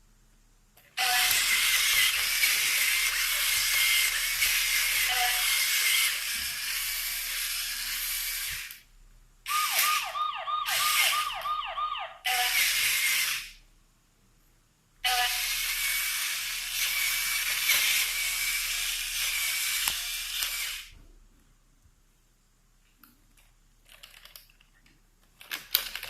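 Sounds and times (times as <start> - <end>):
toy robot hiss noise: 1.0 - 8.8, 9.5 - 10.1, 12.3 - 13.6, 15.0 - 20.9.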